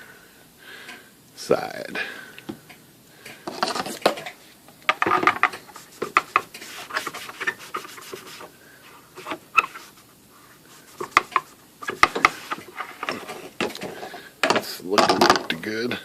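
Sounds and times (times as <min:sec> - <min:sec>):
clicks and knocks: 0:03.5 - 0:06.3
towel rubbing on panel: 0:05.8 - 0:13.6.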